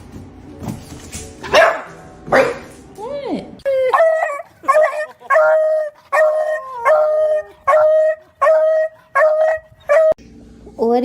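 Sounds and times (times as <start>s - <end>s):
dog barking high-pitched: 1.4s - 2.7s, 3.9s - 10.2s.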